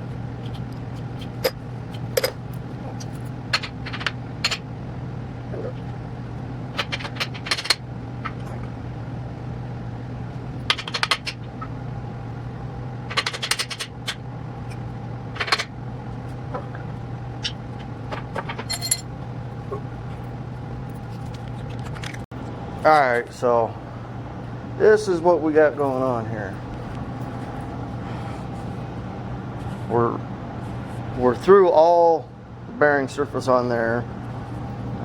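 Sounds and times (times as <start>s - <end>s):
metal tools clinking: 18.5s - 19.1s.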